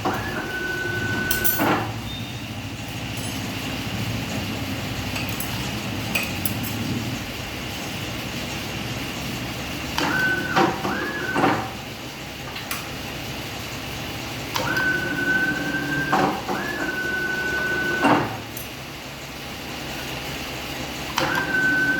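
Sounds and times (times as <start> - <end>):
motor high whine: 0.0 - 2.6
machine mechanical hum: 0.0 - 21.9.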